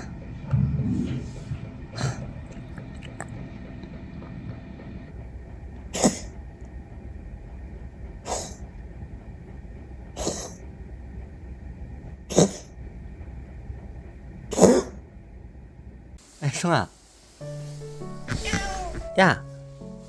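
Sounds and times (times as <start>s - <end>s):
cat sneezing: 6.0s - 6.4s, 8.3s - 8.6s, 10.2s - 10.6s, 12.3s - 12.7s, 14.5s - 15.0s, 18.2s - 19.2s.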